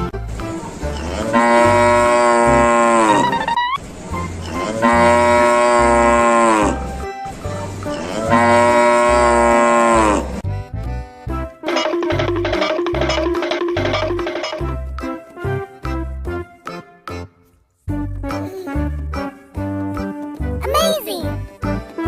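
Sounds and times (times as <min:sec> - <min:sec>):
cow mooing: 0:01.0 - 0:03.4, 0:04.6 - 0:06.9, 0:07.9 - 0:10.4
background music with low beat: 0:10.4 - 0:20.6.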